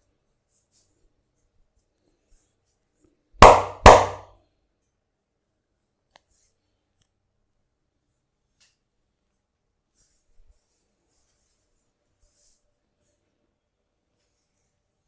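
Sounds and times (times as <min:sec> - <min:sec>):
hand slaps: 0:03.4 - 0:04.2.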